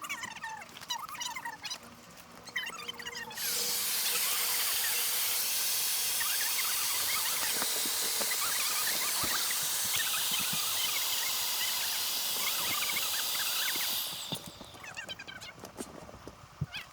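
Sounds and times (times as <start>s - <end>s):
loud steady hiss: 3.4s - 14.9s.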